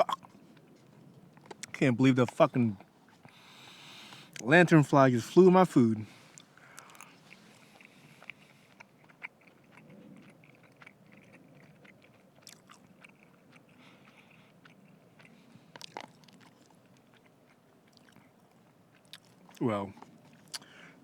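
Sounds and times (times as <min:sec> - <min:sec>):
faint chewing: 0:00.0 - 0:21.0
soft mouth clicks: 0:06.3 - 0:16.7, 0:20.0 - 0:20.8.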